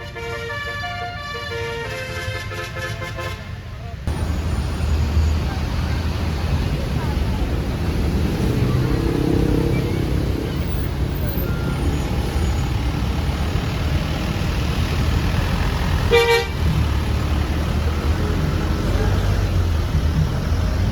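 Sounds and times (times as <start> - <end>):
bus horn blast: 0.0 - 3.6, 16.0 - 16.8
bus engine rumbling: 0.0 - 20.9.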